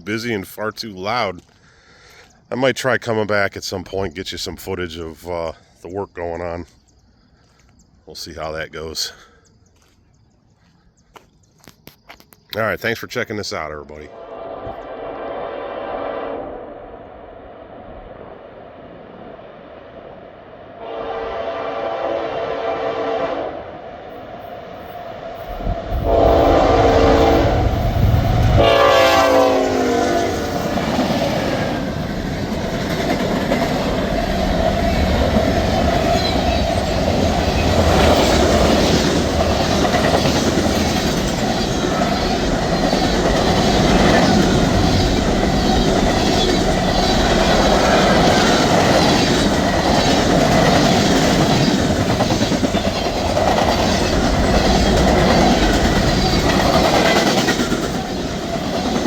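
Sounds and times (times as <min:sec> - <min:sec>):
train rumbling past: 0:13.6 - 0:59.0
locomotive horn blasts: 0:14.1 - 0:16.7, 0:20.8 - 0:23.7, 0:26.0 - 0:27.7, 0:28.6 - 0:30.6
wheels clacking over rail joints: 0:30.6 - 0:59.0.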